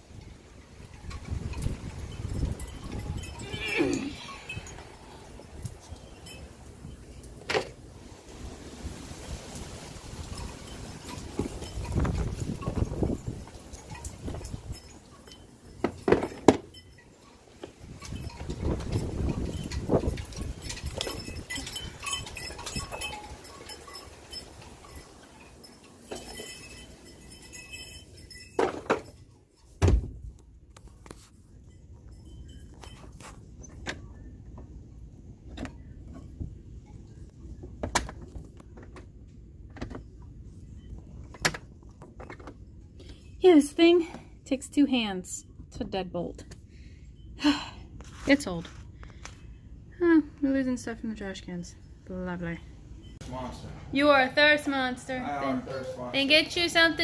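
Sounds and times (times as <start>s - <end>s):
wind buffeting microphone: 0.0s - 7.1s, 8.2s - 15.1s, 17.7s - 25.1s
handling thumps and knocks: 15.8s - 16.7s, 29.8s - 30.4s.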